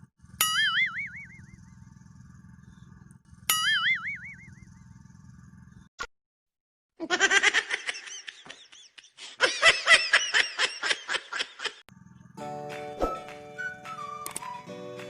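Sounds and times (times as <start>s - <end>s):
high-pitched laughter: 7.0s - 11.8s
click: 14.2s - 14.5s.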